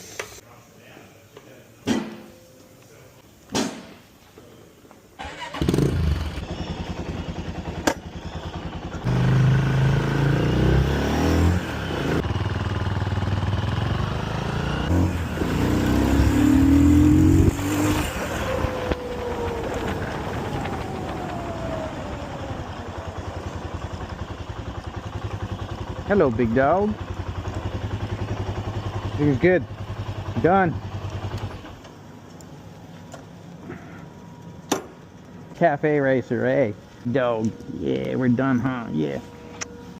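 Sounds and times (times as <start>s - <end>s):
motorcycle engine starting and revving: 5.2s - 32.3s.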